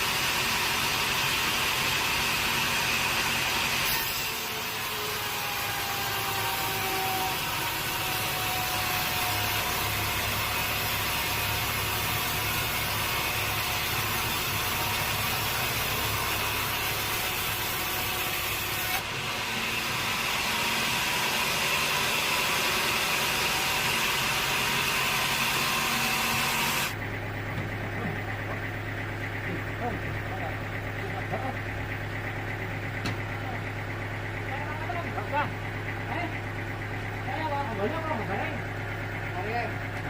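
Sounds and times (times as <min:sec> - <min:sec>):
saw cutting through log: 0:00.0 - 0:27.0
mill engine hum: 0:00.0 - 0:40.0.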